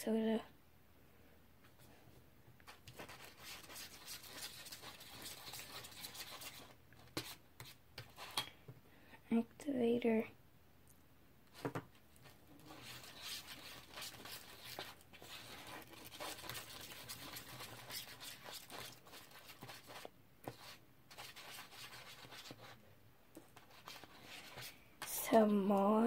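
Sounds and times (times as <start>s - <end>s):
slime stirring in a container: 2.8s - 8.4s, 12.2s - 22.7s.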